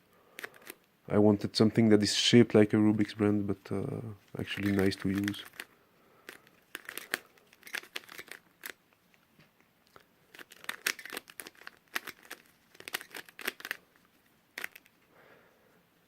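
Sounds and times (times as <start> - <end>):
plastic puzzle cube clicks: 0.4 - 0.9, 4.5 - 8.8, 9.9 - 13.9, 14.5 - 14.9.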